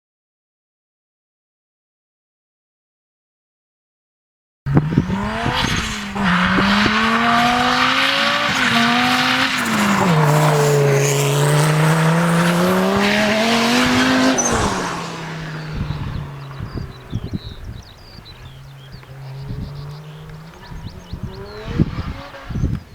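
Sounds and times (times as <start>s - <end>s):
racing engine revving: 4.7s - 22.9s.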